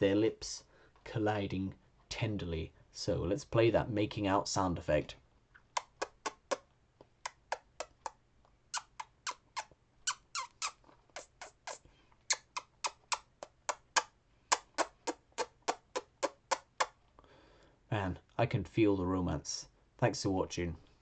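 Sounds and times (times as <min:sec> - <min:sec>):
wet kissing smacks: 0:05.6 - 0:17.0.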